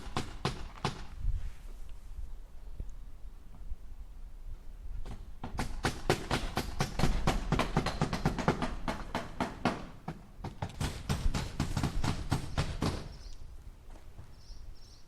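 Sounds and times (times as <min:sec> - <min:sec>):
hammer striking nails into wood: 0:00.0 - 0:01.1, 0:05.1 - 0:13.2.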